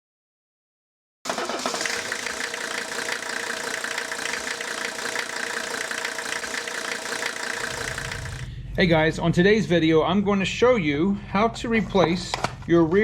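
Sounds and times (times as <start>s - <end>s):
machine running with tones: 1.8s - 8.6s.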